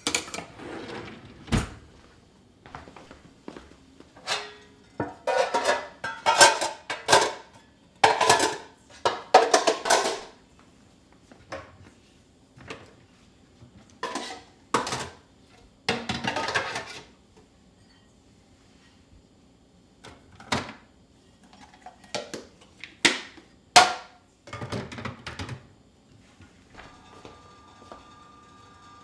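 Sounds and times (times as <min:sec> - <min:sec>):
dishes clinking and clattering: 0:04.2 - 0:10.3, 0:26.8 - 0:29.0.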